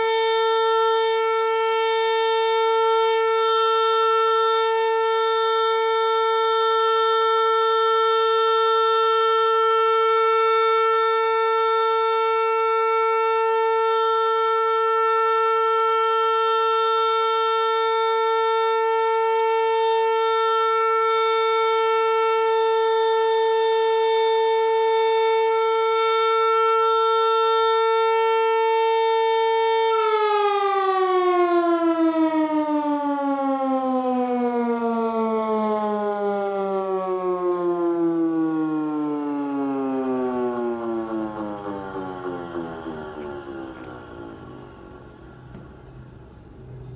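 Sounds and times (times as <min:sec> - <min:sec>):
civil defence siren steady tone: 0:00.0 - 0:46.9.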